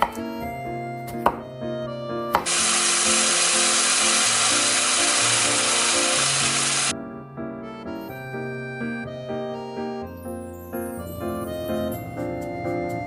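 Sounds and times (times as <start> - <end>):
background music: 0.0 - 13.0
loud hissing from food preparation: 2.4 - 6.9.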